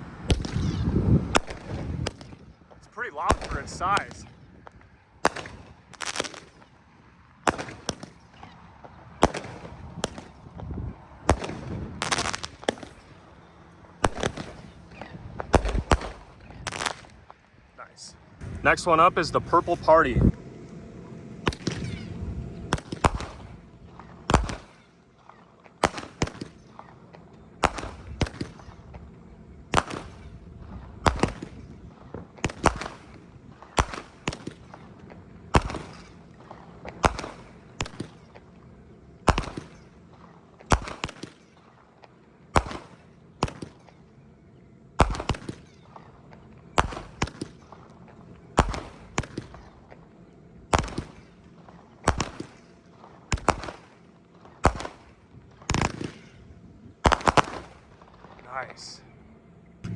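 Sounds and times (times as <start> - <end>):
firework cake sharp bangs: 0.0 - 4.4, 5.2 - 6.7, 7.4 - 8.6, 9.2 - 13.4, 14.0 - 17.3, 21.5 - 22.1, 22.7 - 29.0, 29.7 - 30.4, 31.0 - 34.9, 35.5 - 38.4, 39.3 - 40.0, 40.6 - 41.6, 42.5 - 43.9, 45.0 - 46.1, 46.7 - 47.9, 48.5 - 49.8, 50.7 - 56.4, 57.0 - 58.3.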